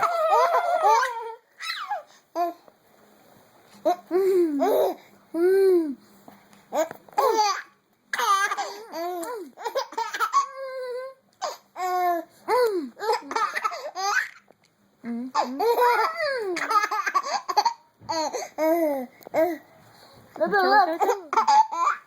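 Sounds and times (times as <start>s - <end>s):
young child laughing and squealing: 0.0s - 2.0s.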